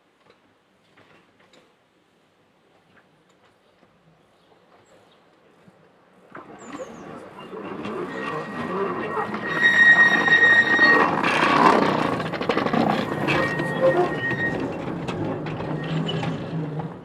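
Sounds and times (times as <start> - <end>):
train rumbling: 5.9 - 17.0
train wheels squealing: 6.6 - 17.0.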